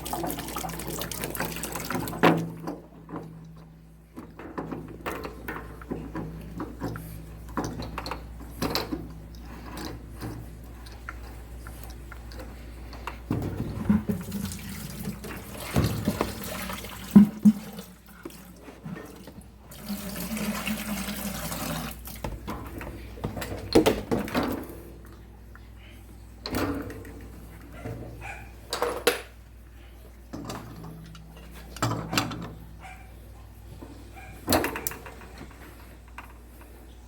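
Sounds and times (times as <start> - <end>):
water running from port: 0.0 - 3.8, 13.8 - 22.4.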